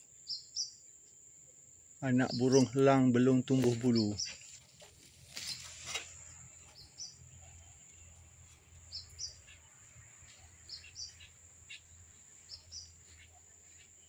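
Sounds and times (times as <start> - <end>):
insect drone: 0.0 - 4.2
bird chirping: 0.0 - 14.0.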